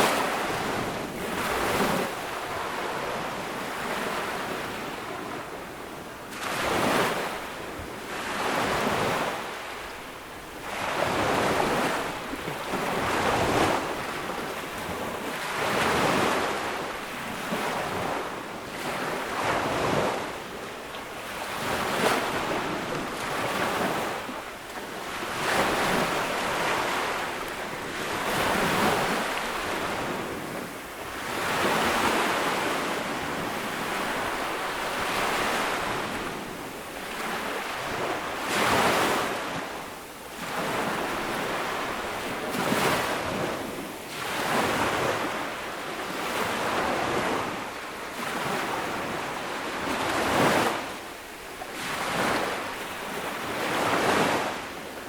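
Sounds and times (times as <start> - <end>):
ocean waves breaking on beach: 0.0 - 55.0.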